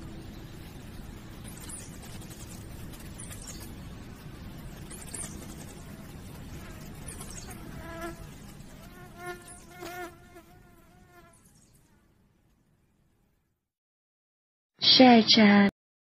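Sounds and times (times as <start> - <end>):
flying insect buzzing: 4.8 - 11.6.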